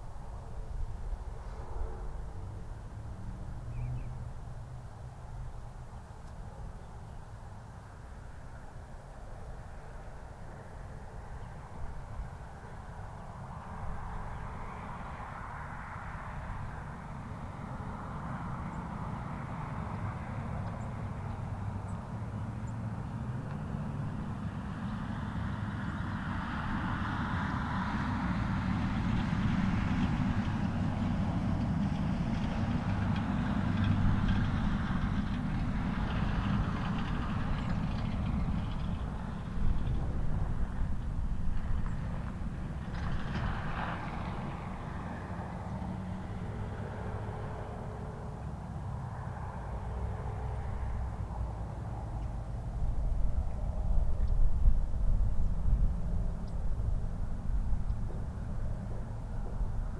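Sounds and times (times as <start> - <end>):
distant vehicle engine rumble: 16.0 - 59.9.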